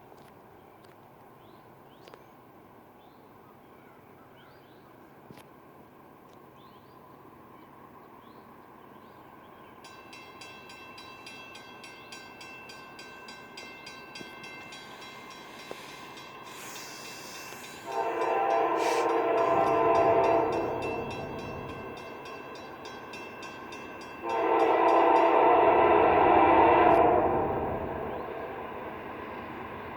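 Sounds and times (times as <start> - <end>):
train rumble: 8.3 - 29.9
crossing bell ringing: 9.8 - 25.7
locomotive horn blasts: 15.7 - 22.6, 24.0 - 28.6.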